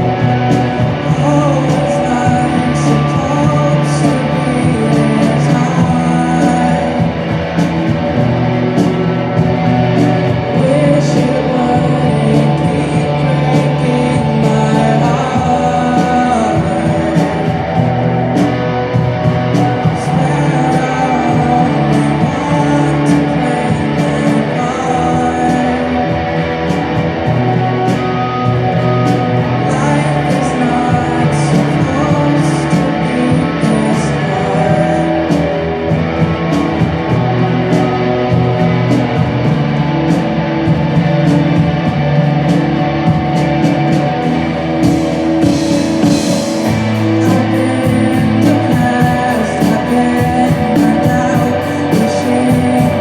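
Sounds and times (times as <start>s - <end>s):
bass guitar: 0.0s - 53.0s
drums with cymbal strokes: 0.0s - 53.0s
electric guitar notes: 0.0s - 53.0s.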